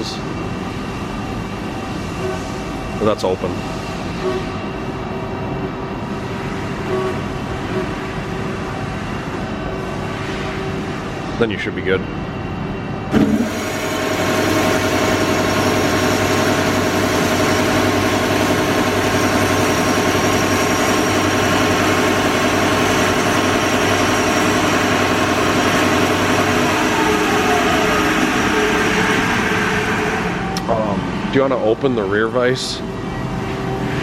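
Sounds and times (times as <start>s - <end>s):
band saw machine hum: 13.1s - 34.0s.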